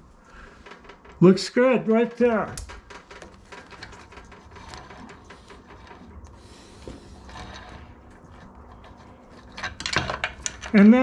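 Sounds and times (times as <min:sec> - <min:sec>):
sliding scrape: 0:04.3 - 0:10.1
metal parts clicking: 0:08.7 - 0:11.0.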